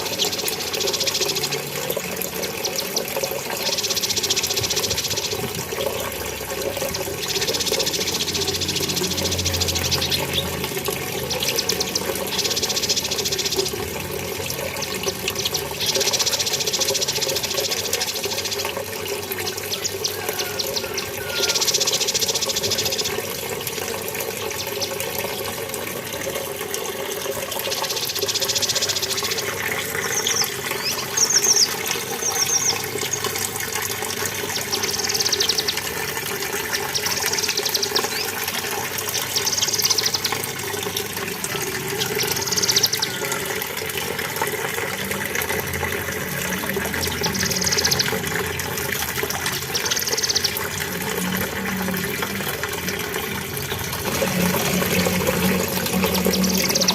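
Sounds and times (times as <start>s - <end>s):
songbird trilling: 0.0s - 18.8s, 19.4s - 23.3s, 27.6s - 33.3s, 34.6s - 36.0s, 36.7s - 38.4s, 39.2s - 40.5s, 41.9s - 43.4s, 46.5s - 48.2s, 49.6s - 51.8s, 55.9s - 56.9s
running water: 0.0s - 56.9s.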